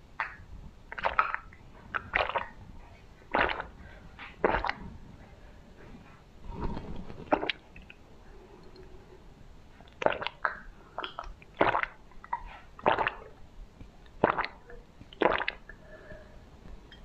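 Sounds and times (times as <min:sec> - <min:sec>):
wet squishy eating bites: 0:00.2 - 0:02.6, 0:03.3 - 0:03.7, 0:04.3 - 0:04.8.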